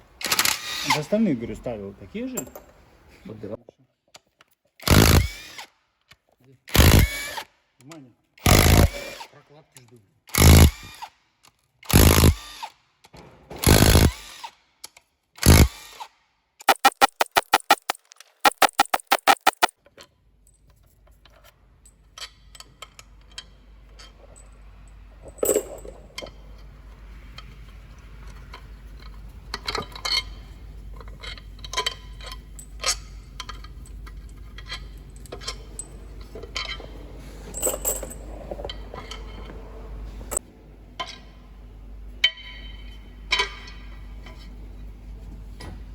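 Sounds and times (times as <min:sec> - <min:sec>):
power tool rattling: 0:04.8 - 0:05.4, 0:06.7 - 0:07.2, 0:08.4 - 0:09.1, 0:10.4 - 0:10.8, 0:11.9 - 0:12.4, 0:13.6 - 0:14.2, 0:15.4 - 0:15.7, 0:16.7 - 0:19.7
metal tools clinking: 0:31.8 - 0:38.2.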